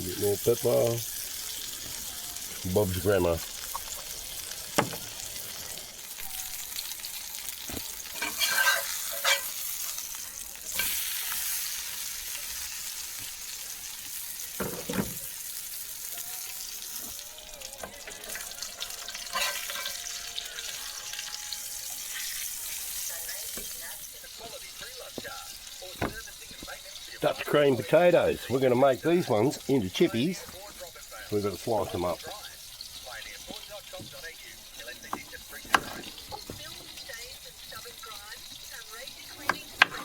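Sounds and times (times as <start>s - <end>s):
steak sizzling in a pan: 0.0s - 40.0s
utensil knocks: 4.8s - 5.1s.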